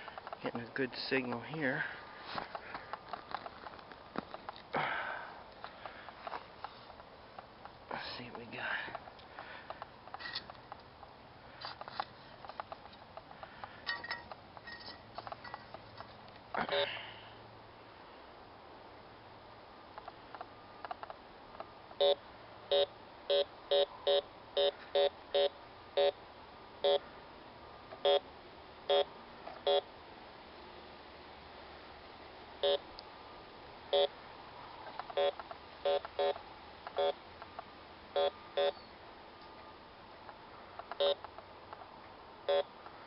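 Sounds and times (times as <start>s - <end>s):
metal detector beeps: 22.0s - 26.2s, 28.0s - 28.2s, 28.9s - 29.8s, 32.6s - 32.8s, 33.9s - 34.1s, 35.1s - 37.2s, 38.2s - 38.9s, 40.9s - 41.3s, 42.5s - 42.7s.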